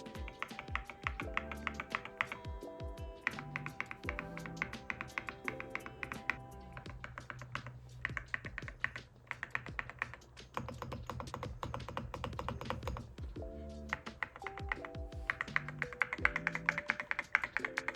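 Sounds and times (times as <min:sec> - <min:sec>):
deep thocky keyboard keystrokes: 0:00.0 - 0:17.9.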